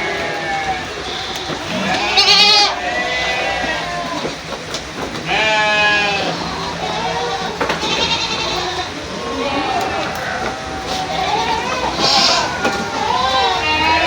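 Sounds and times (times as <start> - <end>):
goats bleating: 0.0 - 14.0.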